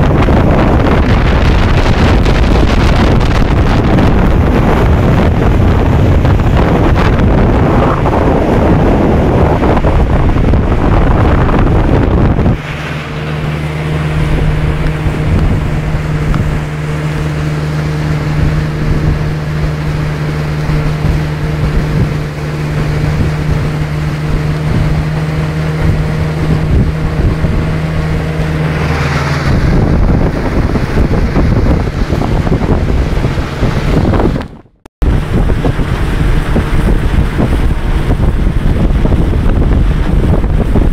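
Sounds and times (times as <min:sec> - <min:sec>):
outboard motor humming: 0:00.0 - 0:40.9
wind noise on microphone: 0:00.0 - 0:40.9.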